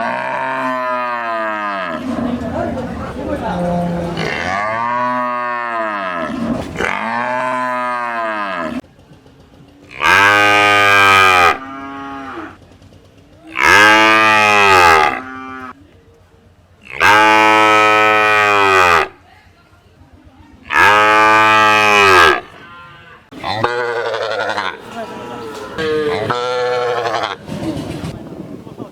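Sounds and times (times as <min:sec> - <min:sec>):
cattle mooing: 0:00.0 - 0:08.8, 0:10.0 - 0:12.6, 0:13.6 - 0:15.8, 0:16.9 - 0:19.1, 0:20.7 - 0:27.4.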